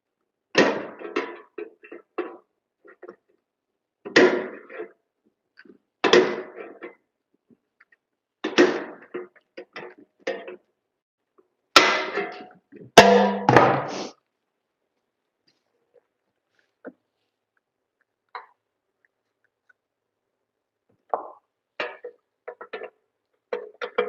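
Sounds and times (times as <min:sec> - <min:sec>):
metallic clanks on sheet metal: 0:11.8 - 0:14.0.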